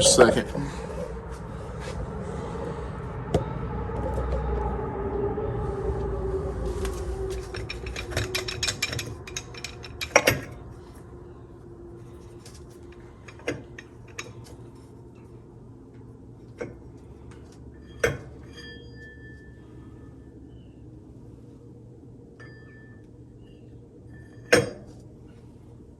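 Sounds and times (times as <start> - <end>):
low rumble: 0.0 - 17.8
metal parts clinking and rattling: 6.8 - 10.8, 12.1 - 14.8.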